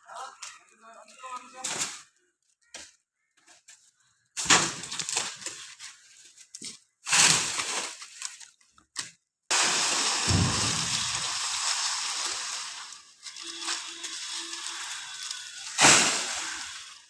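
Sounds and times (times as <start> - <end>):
steady hiss: 9.5 - 13.0, 14.1 - 17.0
tree pieces crashing down: 9.6 - 17.0.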